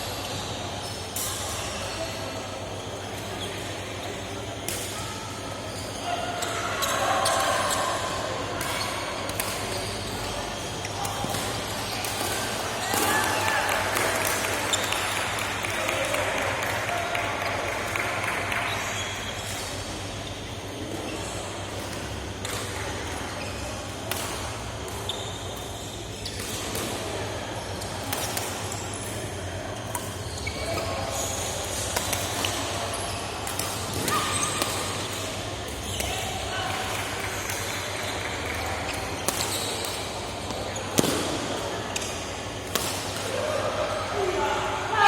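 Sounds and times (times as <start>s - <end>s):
indoor gym background noise: 0.0s - 45.0s
low hum of hall: 0.0s - 45.0s
shoe squeak on floor: 39.4s - 39.8s.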